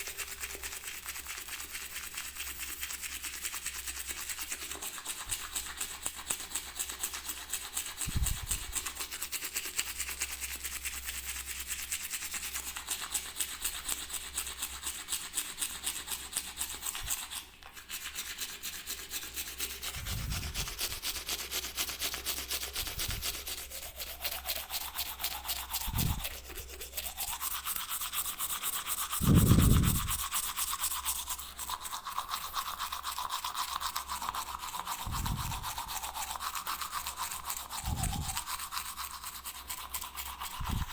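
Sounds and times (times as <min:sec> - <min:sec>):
toothbrush scrubbing: 0:00.0 - 0:40.9
dull low thumps: 0:29.2 - 0:30.1.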